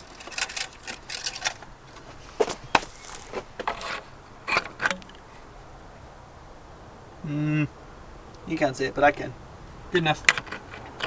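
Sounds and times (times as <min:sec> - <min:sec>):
battery hardware clicks and knocks: 0:00.0 - 0:05.3.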